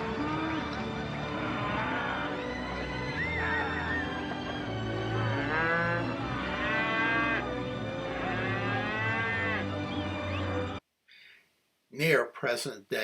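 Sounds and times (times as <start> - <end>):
cattle mooing: 0.0 - 9.8
background music: 0.0 - 10.8.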